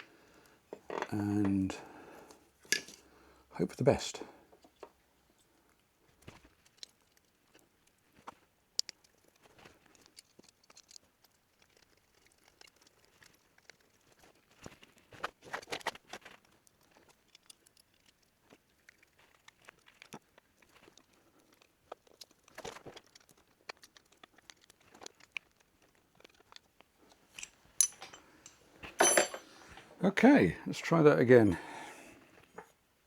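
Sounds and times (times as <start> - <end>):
small metal parts clicking and tapping: 6.2 - 29.5.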